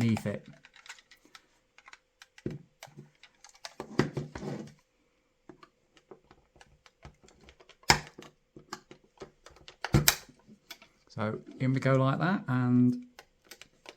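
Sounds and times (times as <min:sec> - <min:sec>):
plastic and metal clicks and creaks: 0:00.0 - 0:04.8, 0:05.5 - 0:12.0, 0:12.8 - 0:13.9.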